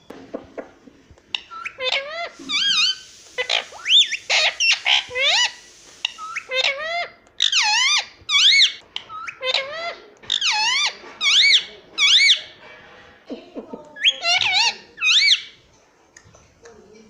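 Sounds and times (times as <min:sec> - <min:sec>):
parrot squeaky calls: 0:01.3 - 0:12.6, 0:14.0 - 0:15.6.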